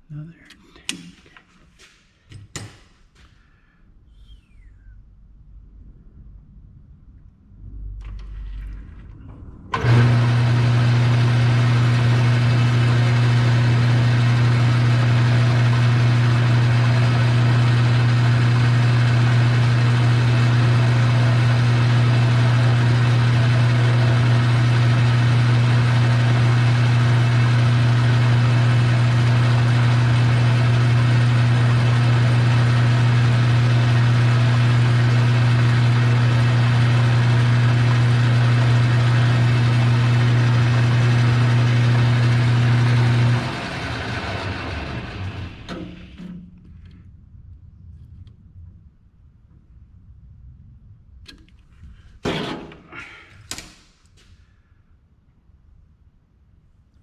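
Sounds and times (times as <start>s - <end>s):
lathe motor switching on: 9.7s - 46.6s.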